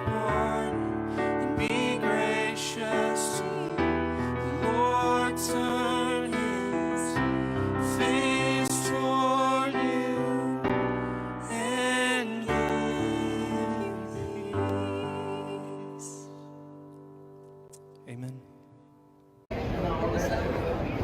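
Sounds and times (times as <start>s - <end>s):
person singing worship song: 0.0s - 16.7s
piano accompaniment: 0.0s - 19.5s.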